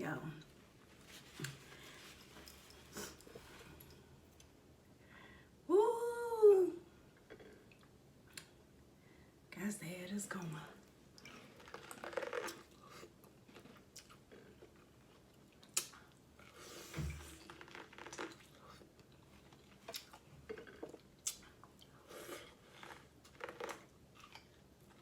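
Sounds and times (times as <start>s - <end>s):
biting and chewing corn: 11.3s - 16.5s, 17.5s - 25.0s.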